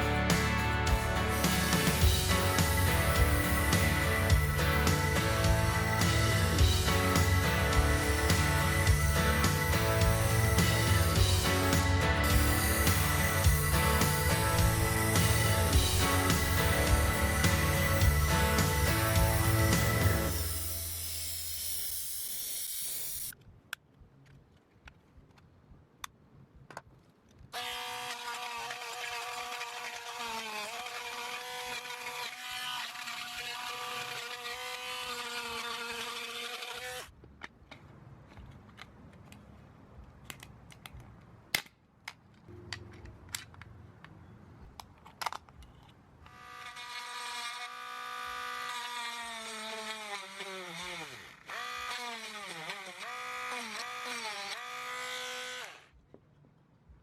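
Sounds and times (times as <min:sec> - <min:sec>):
power tool motor whining: 0:00.0 - 0:23.4, 0:27.6 - 0:37.1, 0:46.3 - 0:56.0.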